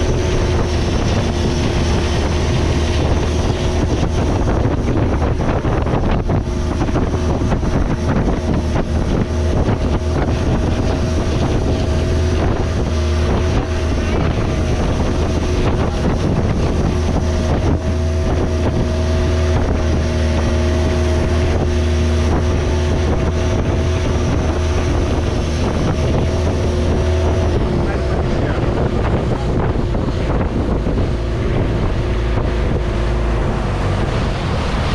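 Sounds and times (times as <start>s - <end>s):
boat engine droning: 0.0s - 34.9s
wind noise on microphone: 0.0s - 34.9s.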